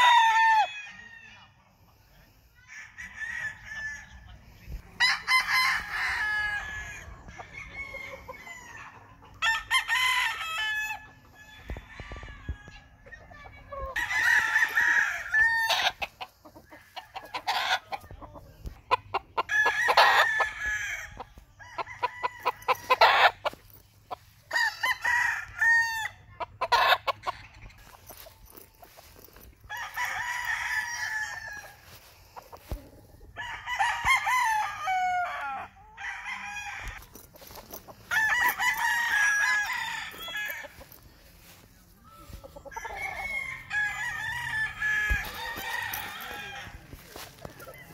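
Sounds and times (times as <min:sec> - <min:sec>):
chicken clucking: 0:14.9 - 0:20.5, 0:26.2 - 0:29.5.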